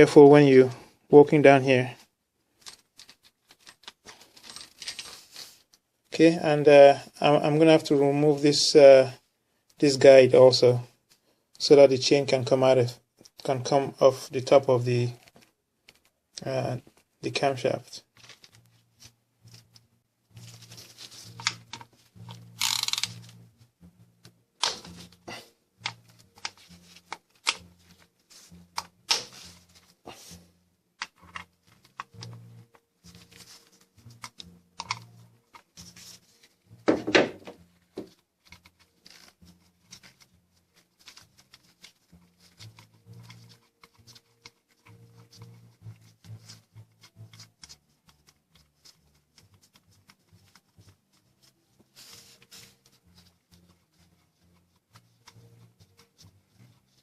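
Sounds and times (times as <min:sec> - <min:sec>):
tools and metal parts clinking: 0:02.6 - 0:05.4.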